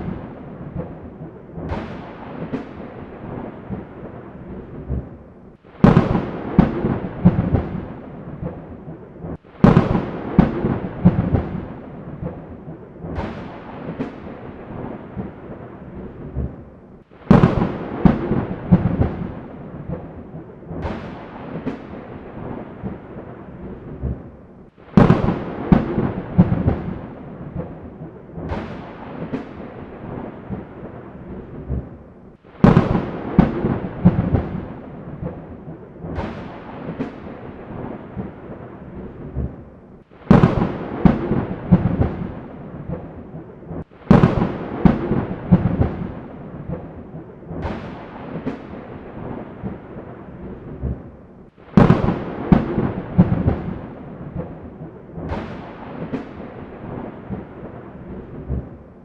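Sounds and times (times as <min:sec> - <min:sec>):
thunderclaps: 0:00.0 - 0:59.0
rain hiss: 0:05.5 - 0:15.8, 0:17.0 - 0:23.6, 0:24.6 - 0:31.6, 0:32.3 - 0:39.2, 0:40.0 - 0:50.3.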